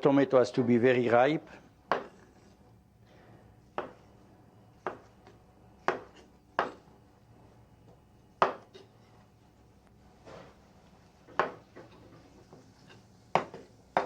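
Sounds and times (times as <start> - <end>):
knife chopping on cutting board: 1.9 - 2.2, 3.8 - 4.0, 4.8 - 5.1, 5.8 - 6.8, 13.3 - 14.0.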